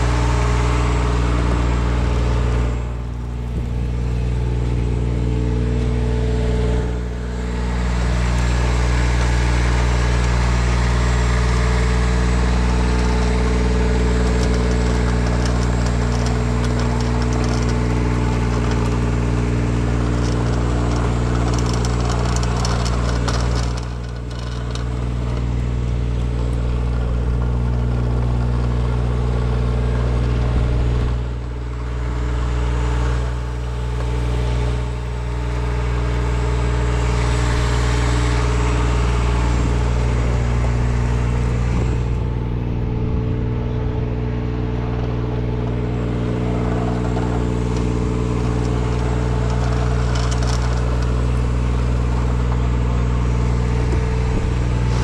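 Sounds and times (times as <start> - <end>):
engine running: 0.0 - 55.0.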